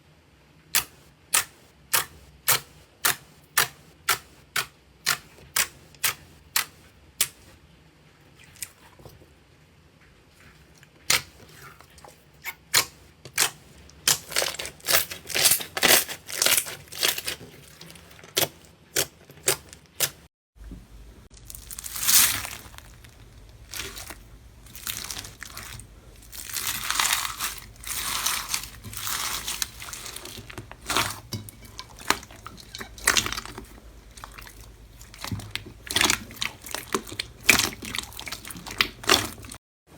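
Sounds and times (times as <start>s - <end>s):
slime crunchy squishes: 11.0s - 39.6s.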